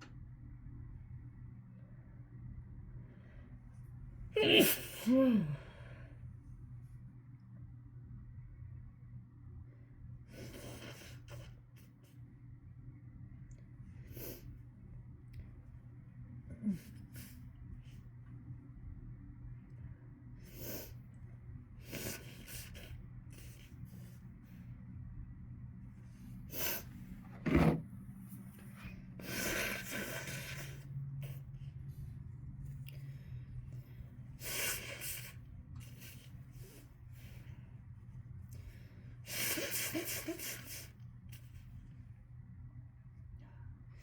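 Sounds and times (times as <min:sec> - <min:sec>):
steady low hum: 0:00.0 - 0:44.0
person sneezing: 0:04.4 - 0:05.6
breathy noisy exhale: 0:29.1 - 0:31.5.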